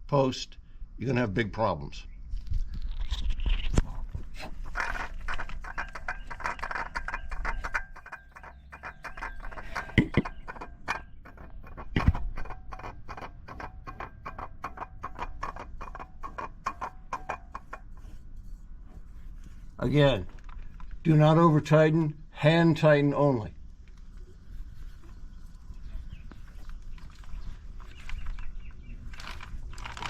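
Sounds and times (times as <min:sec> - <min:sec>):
oil filter threading clicks: 0:04.8 - 0:18.0.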